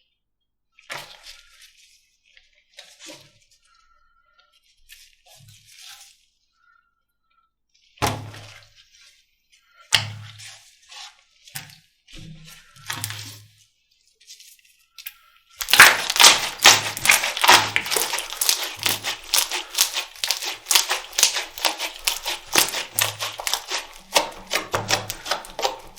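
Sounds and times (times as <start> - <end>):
slime crackling and popping: 15.6 - 25.9
slime squishy thuds: 15.6 - 25.9.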